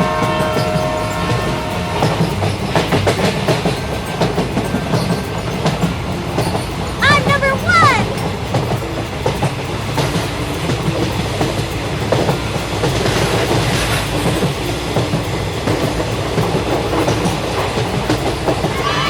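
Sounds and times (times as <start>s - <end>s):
wheels clicking over rails: 0.0s - 7.0s, 8.2s - 19.0s
train rumbling on track: 0.0s - 19.0s.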